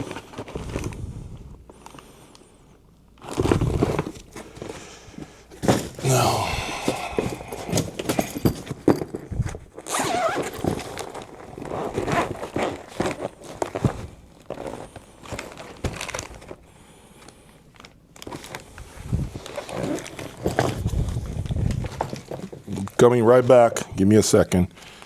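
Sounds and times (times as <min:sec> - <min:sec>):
bag rustling: 0:03.2 - 0:16.6, 0:17.8 - 0:23.0.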